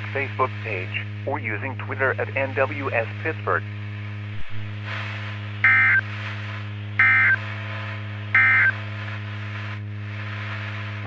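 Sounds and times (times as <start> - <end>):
mains hum: 0.0 - 11.0
radio hiss: 0.0 - 11.0
digital data tone bursts: 5.7 - 6.0, 7.0 - 7.4, 8.4 - 8.7.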